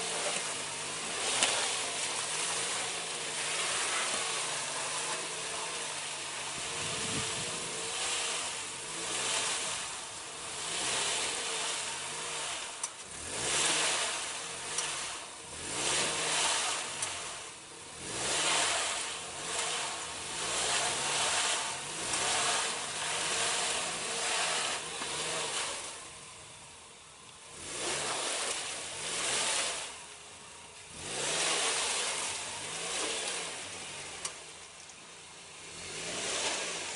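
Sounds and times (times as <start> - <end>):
tyres spinning on loose ground: 0.0 - 12.8, 13.5 - 26.1
off-road vehicle engine revving: 0.0 - 36.9.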